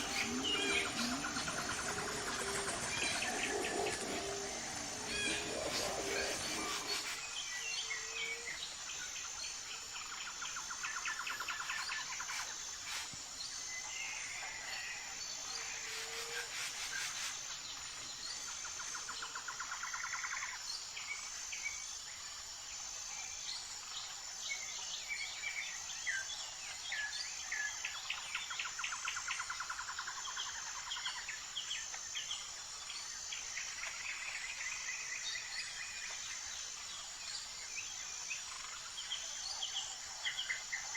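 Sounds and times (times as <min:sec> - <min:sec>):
high-pitched insect drone: 0:00.0 - 0:25.4.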